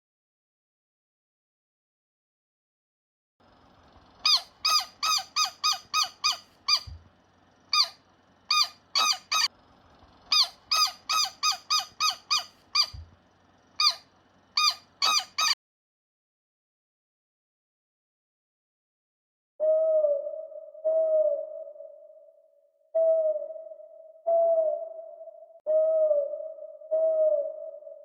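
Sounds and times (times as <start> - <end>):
farm bird calling: 4.2 - 7.0, 7.7 - 9.5, 10.3 - 13.0, 13.8 - 15.6.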